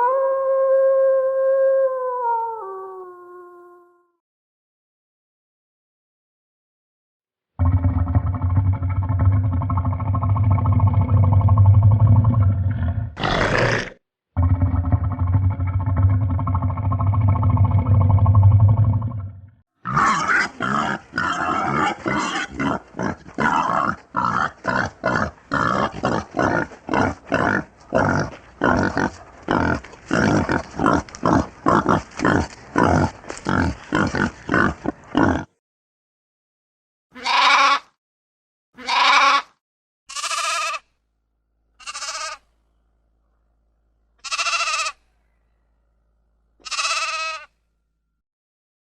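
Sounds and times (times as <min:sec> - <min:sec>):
animal calls: 0:44.2 - 0:45.0, 0:46.6 - 0:47.5.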